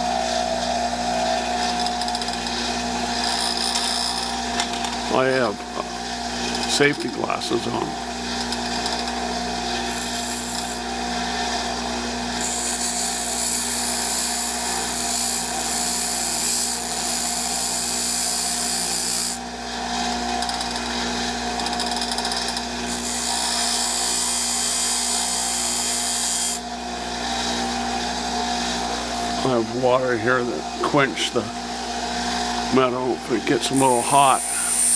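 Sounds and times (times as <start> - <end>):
electric grinder running: 0.0 - 29.6, 33.4 - 34.9
metal hissing on grinding wheel: 9.9 - 10.8, 12.4 - 19.4, 22.9 - 26.6, 33.5 - 34.9.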